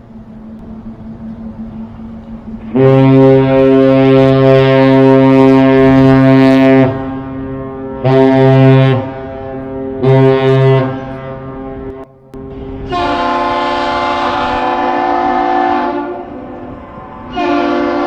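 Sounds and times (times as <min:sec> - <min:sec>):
ship air horn blasts: 0:02.6 - 0:18.0.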